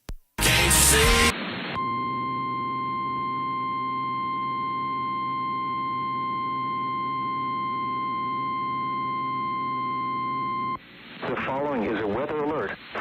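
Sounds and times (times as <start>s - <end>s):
low steady hum: 1.8s - 11.3s.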